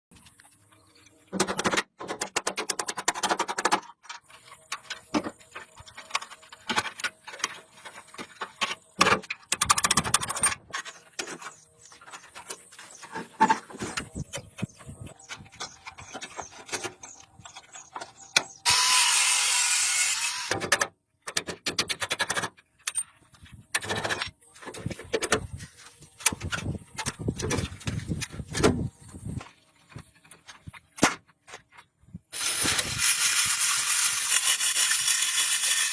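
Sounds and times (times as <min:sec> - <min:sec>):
clicks and knocks of mechanical parts: 0:00.2 - 0:18.6, 0:20.4 - 0:31.8
ratcheting rattles: 0:32.4 - 0:35.9.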